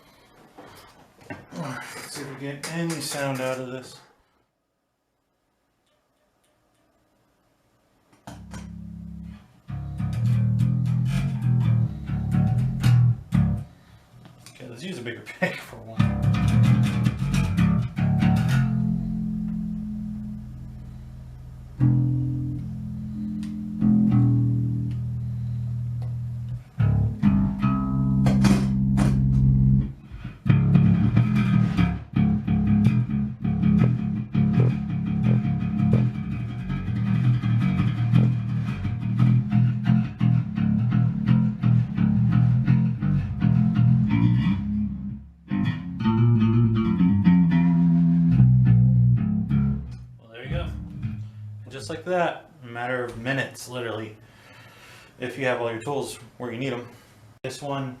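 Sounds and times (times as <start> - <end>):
electric bass played with a pick: 8.2 - 13.9, 16.0 - 51.8.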